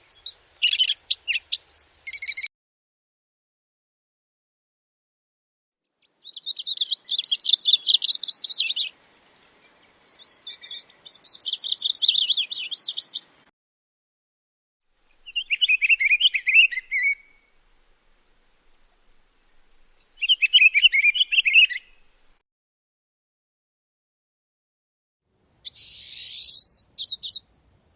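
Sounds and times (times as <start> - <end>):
songbird warbling: 0.1 - 2.5, 6.2 - 13.3, 15.1 - 17.6, 18.6 - 22.4, 25.5 - 27.9.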